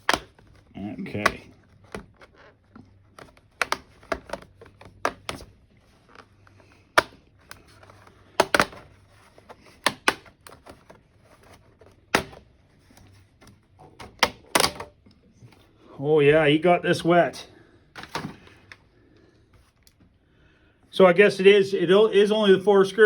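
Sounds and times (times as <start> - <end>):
plastic clips snapping and clicking: 0.0 - 0.6, 1.2 - 5.4, 6.1 - 8.9, 9.7 - 10.8, 14.0 - 15.2.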